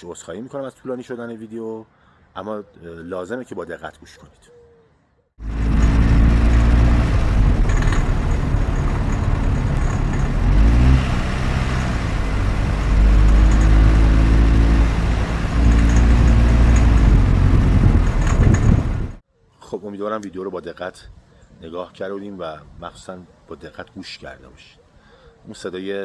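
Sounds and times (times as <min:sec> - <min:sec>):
car engine running under load: 0:05.4 - 0:19.2
engine knock metallic rattle: 0:05.4 - 0:19.2.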